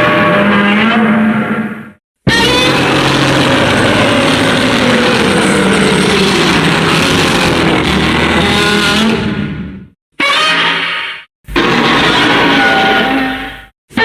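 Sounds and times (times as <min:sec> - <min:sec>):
loud gravelly monster roar: 0:02.3 - 0:09.5.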